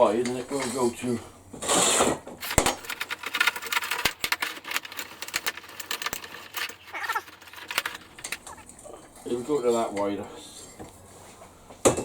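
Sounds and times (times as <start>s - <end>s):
steel parts clinking: 2.4s - 8.7s.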